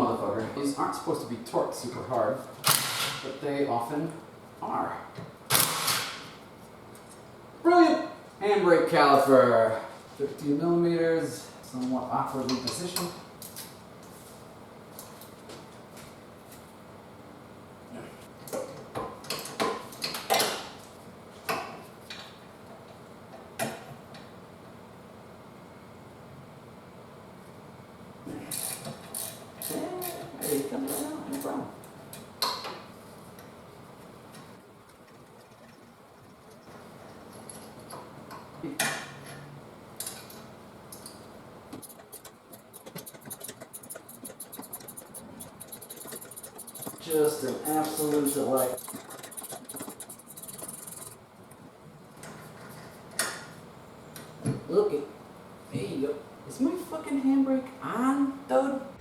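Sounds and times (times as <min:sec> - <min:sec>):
small clicks and rattles: 0:41.8 - 0:51.2.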